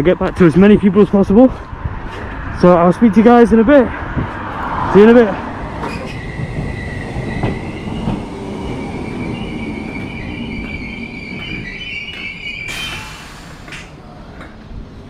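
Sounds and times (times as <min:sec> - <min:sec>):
high-pitched squeal: 0:05.8 - 0:13.9.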